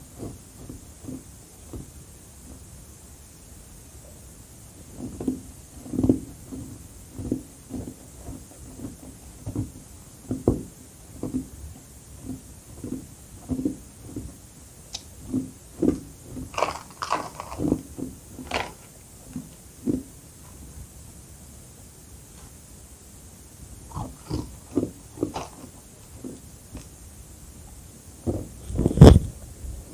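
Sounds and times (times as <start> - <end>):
ice being chewed: 15.4 - 18.9, 23.9 - 26.9.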